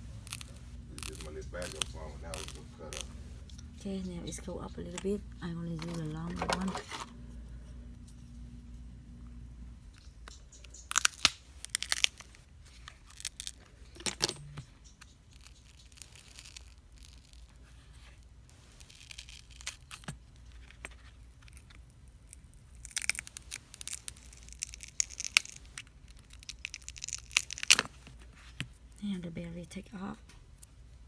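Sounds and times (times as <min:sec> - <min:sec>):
battery adhesive tearing: 0:00.1 - 0:03.6, 0:10.3 - 0:14.3, 0:21.5 - 0:28.2.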